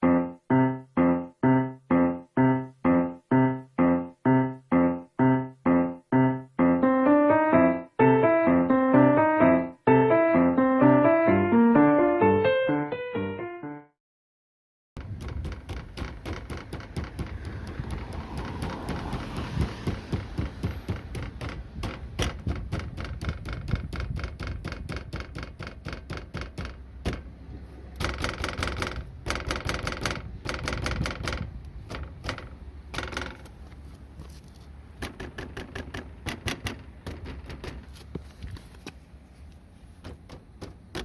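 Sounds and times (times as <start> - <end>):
loose part rattling: 15.0 - 19.2, 20.1 - 27.3, 28.0 - 33.8.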